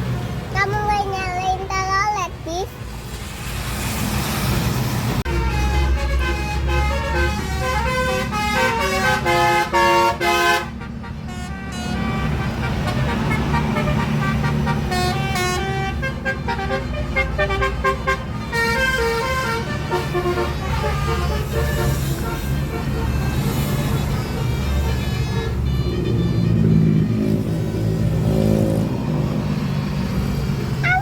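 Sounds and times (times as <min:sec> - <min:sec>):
low bus engine rumble: 0:00.0 - 0:31.0
multi-tone air horn tune: 0:05.3 - 0:27.8.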